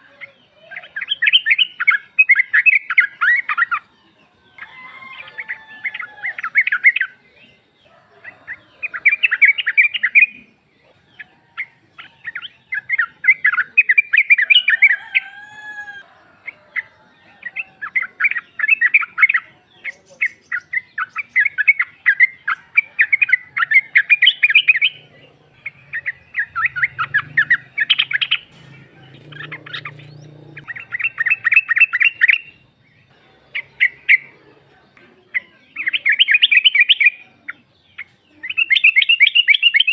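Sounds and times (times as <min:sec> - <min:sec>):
bird chattering call: 0:16.4 - 0:32.7, 0:33.4 - 0:39.9.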